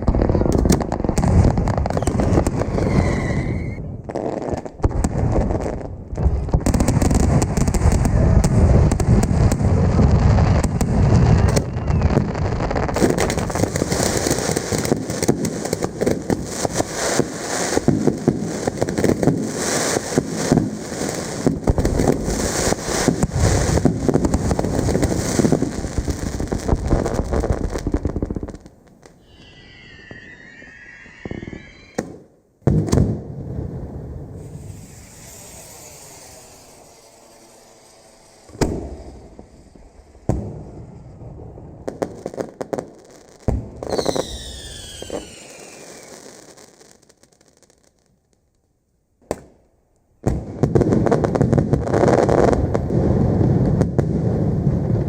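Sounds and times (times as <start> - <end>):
fireworks crackling and banging: 0.0 - 55.0
faint wavering whistles: 29.2 - 32.0, 34.5 - 41.2.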